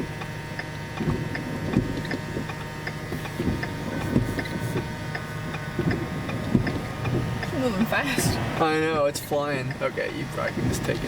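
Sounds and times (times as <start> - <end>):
faint rapid ticking: 0.0 - 11.0
road and engine rumble: 0.0 - 11.0.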